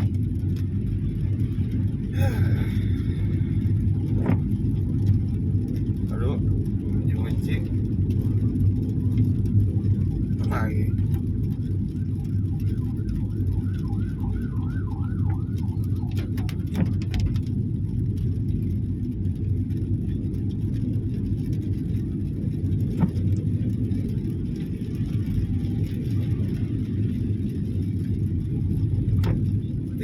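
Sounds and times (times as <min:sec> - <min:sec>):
car driving in rain: 0:00.0 - 0:30.0
distant emergency siren yelping: 0:12.0 - 0:16.7.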